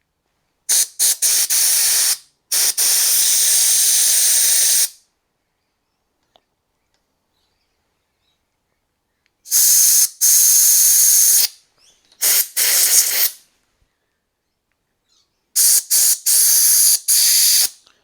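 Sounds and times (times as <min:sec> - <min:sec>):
compressed air blow gun hissing: 0:00.7 - 0:05.0, 0:09.5 - 0:11.6, 0:12.2 - 0:13.4, 0:15.6 - 0:17.8.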